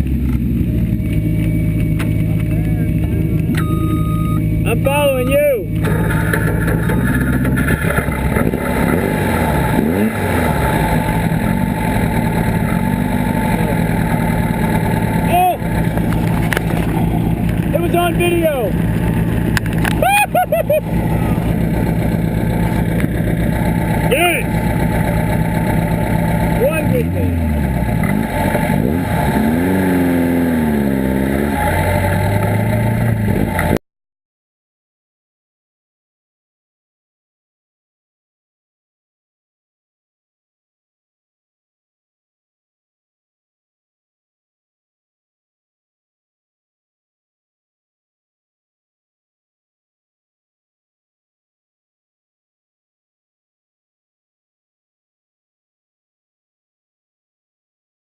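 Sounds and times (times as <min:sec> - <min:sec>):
buggy engine running: 0:00.0 - 0:33.8
engine rev: 0:00.0 - 0:33.8.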